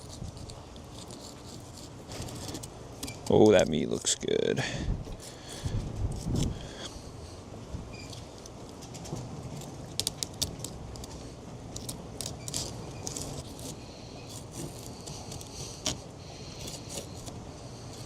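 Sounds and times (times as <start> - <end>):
wind on microphone: 4.8 - 6.7.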